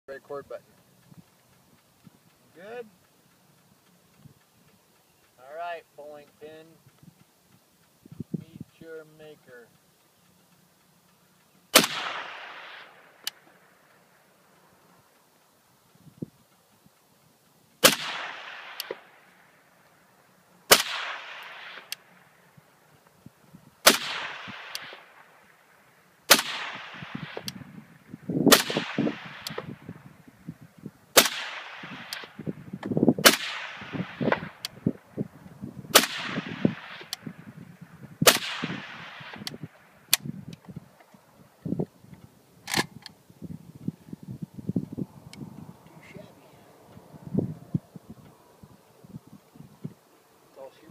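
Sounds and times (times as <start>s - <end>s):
suppressed rifle shots: 11.7s - 14.6s, 17.8s - 20.0s, 20.6s - 22.5s, 23.8s - 30.2s, 31.1s - 35.1s, 35.9s - 37.6s, 38.2s - 40.4s, 42.6s - 43.0s.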